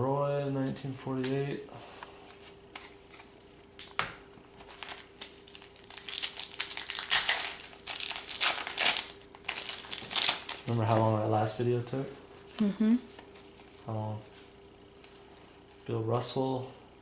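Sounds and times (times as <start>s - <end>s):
wrapper crinkling and tearing: 4.6s - 11.1s.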